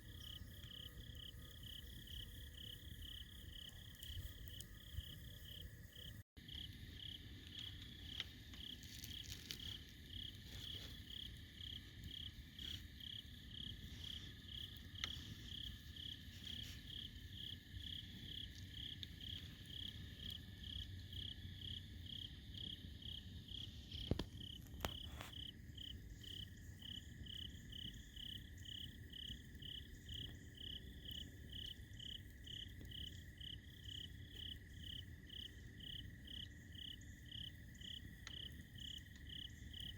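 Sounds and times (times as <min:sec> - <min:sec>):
continuous insect trill: 0:00.0 - 0:39.9
insects chirping: 0:00.0 - 0:39.9
campfire pops: 0:23.9 - 0:26.6.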